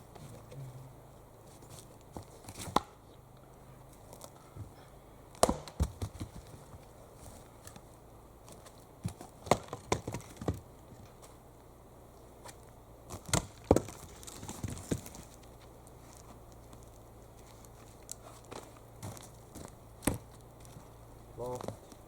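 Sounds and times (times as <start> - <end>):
firewood knocks and clatter: 5.3 - 7.8, 8.4 - 11.4, 12.4 - 22.0.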